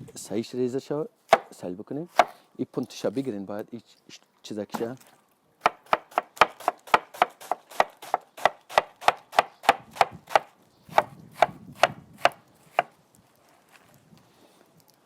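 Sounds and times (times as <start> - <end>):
knife chopping on cutting board: 5.6 - 12.9.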